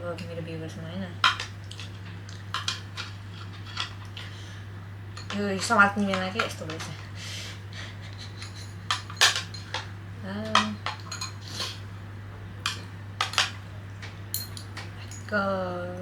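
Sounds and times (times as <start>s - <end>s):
chopsticks tapping on dishes: 5.2s - 7.0s, 8.1s - 11.8s, 12.6s - 15.4s.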